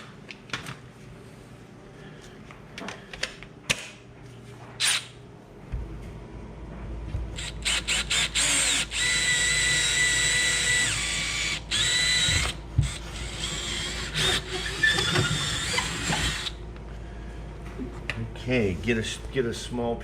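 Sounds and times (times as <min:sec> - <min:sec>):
cordless drill whining: 0:07.4 - 0:16.6.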